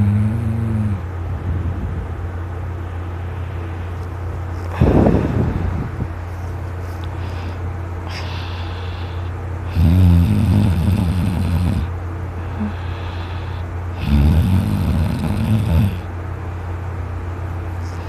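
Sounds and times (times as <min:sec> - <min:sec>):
man snoring loudly: 0:00.0 - 0:01.0, 0:08.1 - 0:11.9, 0:12.6 - 0:16.1
steady low hum: 0:00.0 - 0:18.0.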